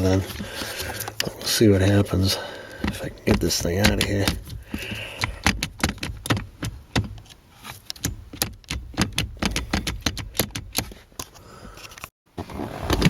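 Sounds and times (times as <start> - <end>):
plastic and metal clicking and rattling: 2.7 - 12.1.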